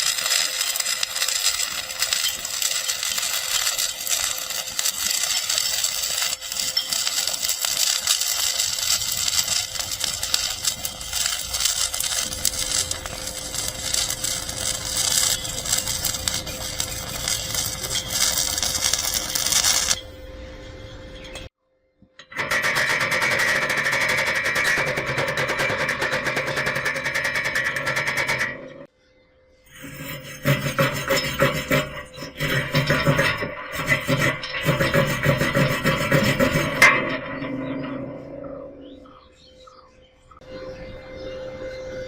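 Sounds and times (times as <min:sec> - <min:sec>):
arc welding crackle: 0:00.0 - 0:20.2, 0:29.7 - 0:37.9.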